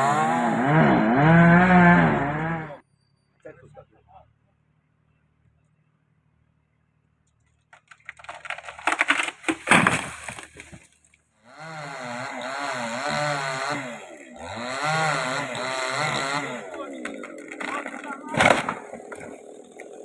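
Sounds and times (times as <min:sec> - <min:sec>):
chainsaw cutting: 0:00.0 - 0:02.8, 0:08.2 - 0:20.0
wood crackling and snapping: 0:07.4 - 0:11.2, 0:16.6 - 0:20.0.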